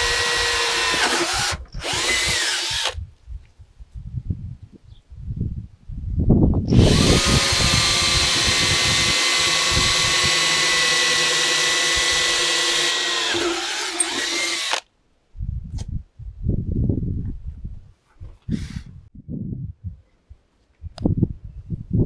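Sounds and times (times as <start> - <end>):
power tool cutting fiberglass: 0.0 - 3.0, 6.8 - 14.8.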